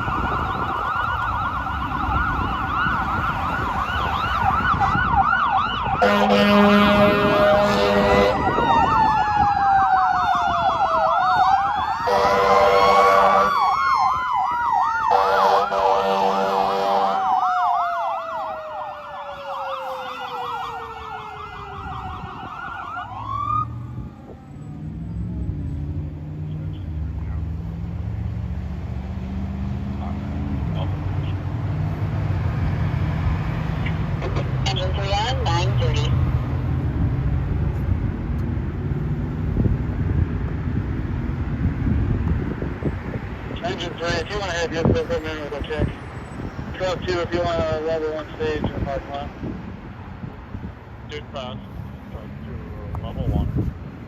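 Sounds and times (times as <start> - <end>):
siren rising and winding down: 0.0 - 6.1, 8.1 - 16.0, 16.8 - 25.8
electronic siren yelping: 0.0 - 25.2
air horn blasts: 6.0 - 8.6, 12.0 - 13.6, 15.1 - 17.2.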